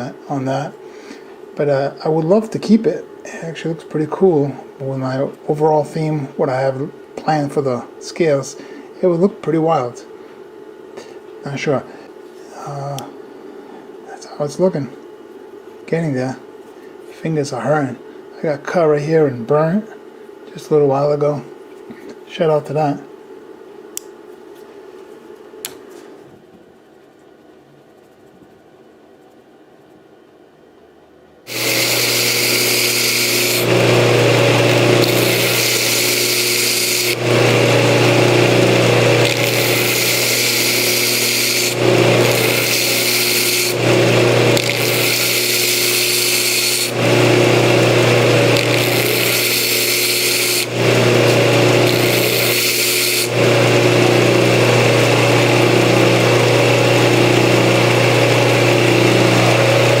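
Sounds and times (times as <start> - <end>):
power tool motor running: 31.5 - 60.0.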